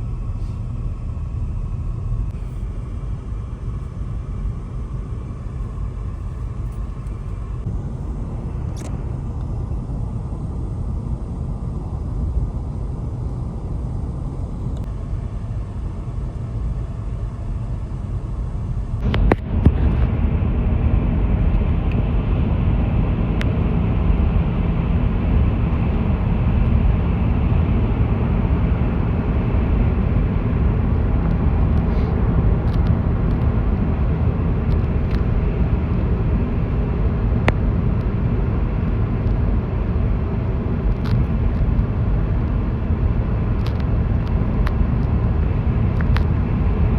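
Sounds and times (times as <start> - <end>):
vehicle rumbling on the move: 0.0 - 46.9.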